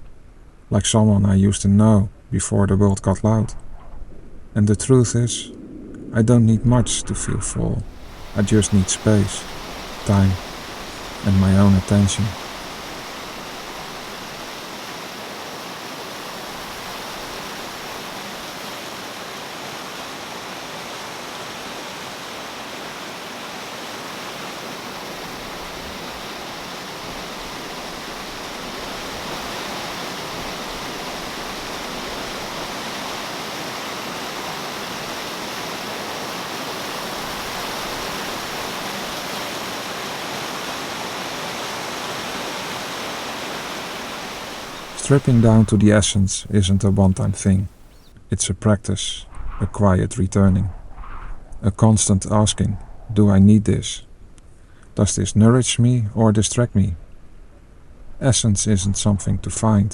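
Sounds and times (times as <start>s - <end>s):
rushing hiss: 7.8s - 48.1s.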